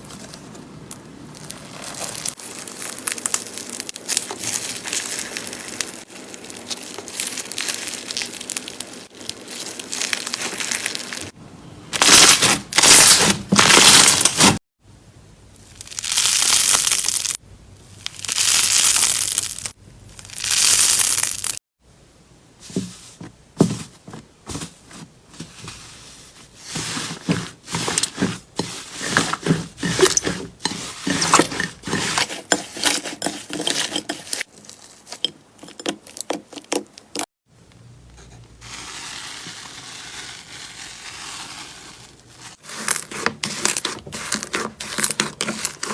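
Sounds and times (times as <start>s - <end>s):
slime crunching and crackling: 1.3s - 11.4s, 12.0s - 14.6s, 15.8s - 17.4s, 18.0s - 21.6s.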